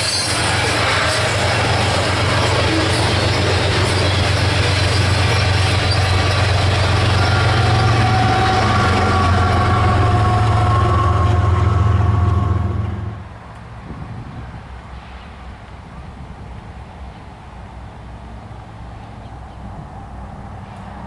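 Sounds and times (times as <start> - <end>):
wheels squealing: 0.0 - 12.8
train wheels rumbling on rail: 0.0 - 21.0.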